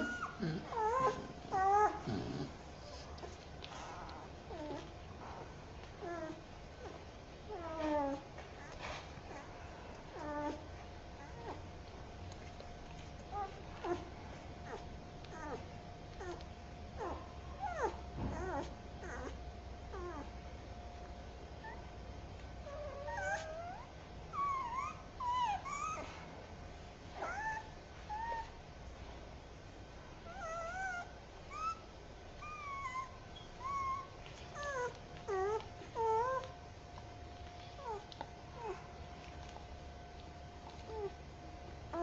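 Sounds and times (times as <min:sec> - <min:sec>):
slowed puppy whimpering: 0:00.0 - 0:11.7, 0:13.2 - 0:20.3, 0:22.6 - 0:26.3, 0:27.2 - 0:28.6, 0:30.2 - 0:36.6, 0:37.6 - 0:39.4, 0:40.6 - 0:41.2.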